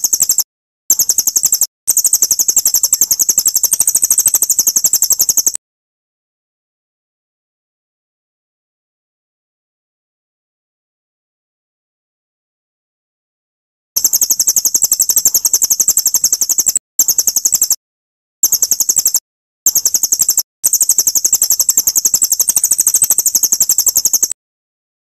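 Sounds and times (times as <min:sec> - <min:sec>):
high-pitched rapid bird trill: 0:00.0 - 0:05.6, 0:14.0 - 0:17.8, 0:18.4 - 0:24.4.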